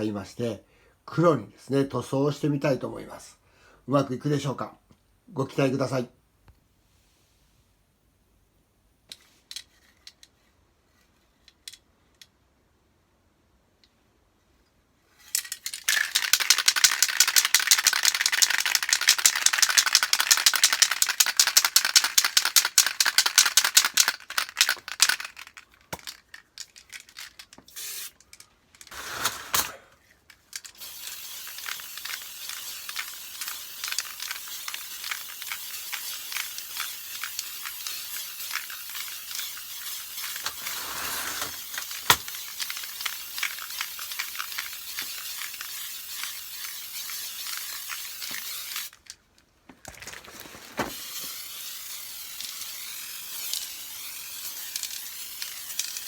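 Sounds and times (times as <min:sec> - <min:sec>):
aerosol can rattling when shaken: 0:15.2 - 0:56.0
spray can hissing: 0:15.9 - 0:26.1, 0:27.7 - 0:28.2, 0:28.8 - 0:29.8, 0:30.7 - 0:48.9, 0:50.7 - 0:56.0.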